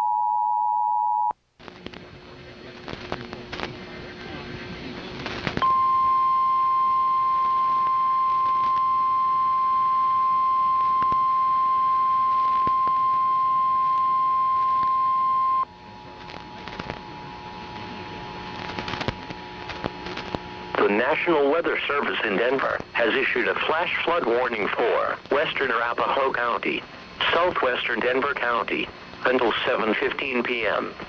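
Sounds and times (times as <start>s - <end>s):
steady high-pitched beep: 5.6s - 15.7s.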